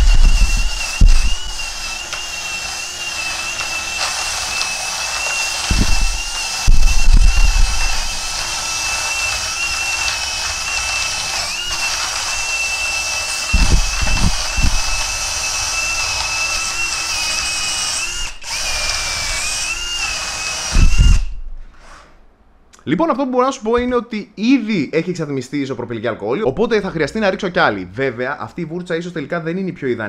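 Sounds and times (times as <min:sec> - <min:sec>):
cordless drill motor whine: 0:00.0 - 0:21.4
loud low knocks: 0:05.7 - 0:08.2, 0:13.5 - 0:15.1.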